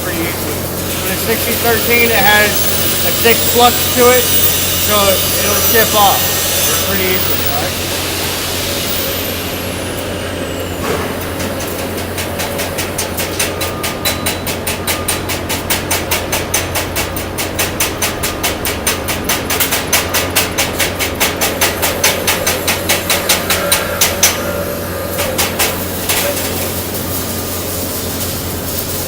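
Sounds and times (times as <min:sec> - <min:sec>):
steady hiss: 0:00.0 - 0:14.1, 0:20.9 - 0:29.0
low hum: 0:21.6 - 0:27.5.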